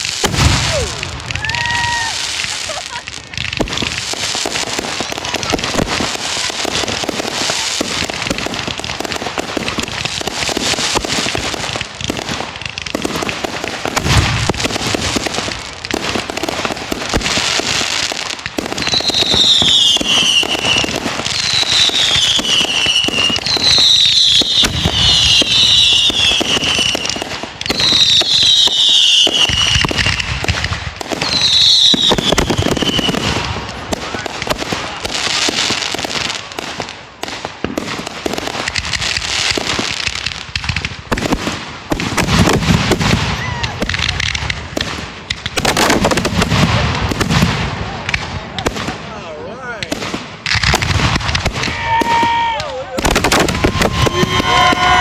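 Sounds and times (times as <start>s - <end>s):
fireworks crackling and popping: 0.0s - 55.0s
deep firework boom: 0.2s - 6.1s, 53.0s - 55.0s
falling whistles: 53.4s - 55.0s.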